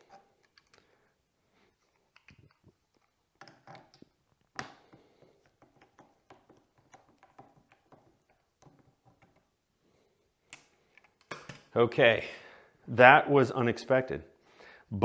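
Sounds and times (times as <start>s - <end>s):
hand tools and metal parts clicking: 0.0s - 0.9s.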